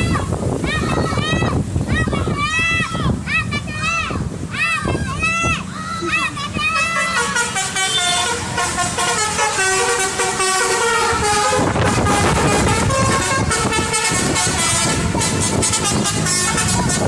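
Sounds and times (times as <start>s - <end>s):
bus low rumble: 0.0s - 17.0s
bus musical horn melody: 6.8s - 17.0s.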